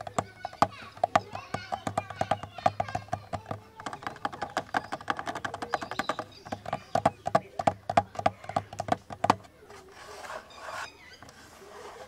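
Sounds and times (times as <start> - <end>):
fingers tapping on camera body: 0.0 - 9.5.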